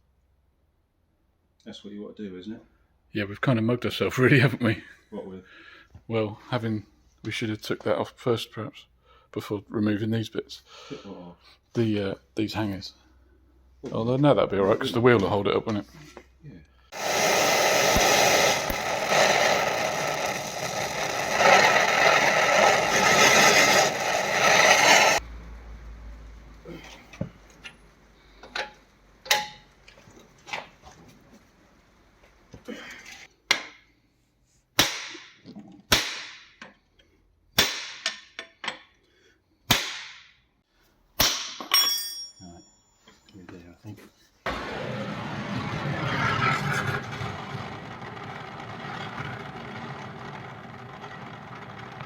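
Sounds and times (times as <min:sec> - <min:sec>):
power tool rushing noise: 0:16.9 - 0:25.2, 0:44.5 - 0:52.0.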